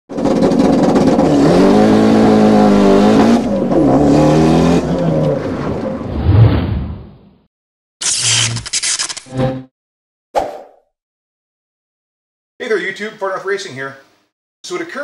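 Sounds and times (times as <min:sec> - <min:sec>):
race car engine revving: 0:00.2 - 0:06.2.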